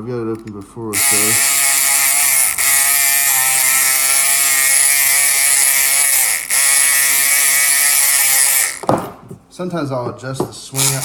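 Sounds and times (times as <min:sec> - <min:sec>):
electric lock pick buzzing: 0:01.0 - 0:09.0, 0:10.8 - 0:11.0.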